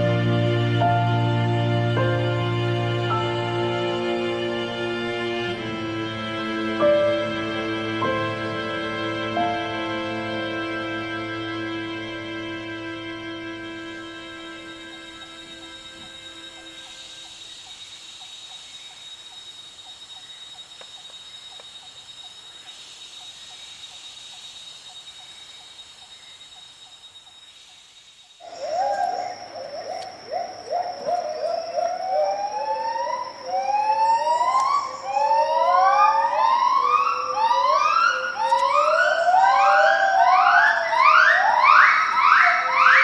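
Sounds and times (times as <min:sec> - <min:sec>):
gibbons whooping: 0:28.4 - 0:43.0.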